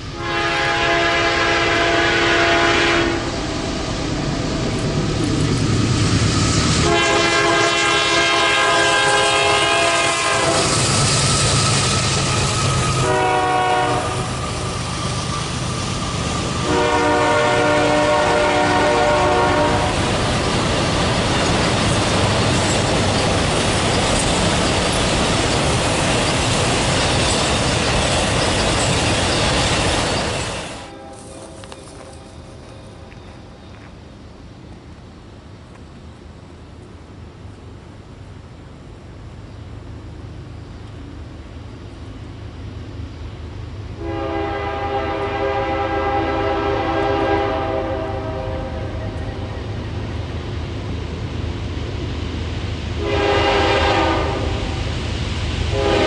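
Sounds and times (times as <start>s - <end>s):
train wheels on rails: 0.0s - 56.0s
locomotive air horn blasts: 0.1s - 3.4s, 6.8s - 11.0s, 12.1s - 14.8s, 16.5s - 20.1s, 30.8s - 31.8s, 44.0s - 49.2s, 53.0s - 54.8s, 55.7s - 56.0s.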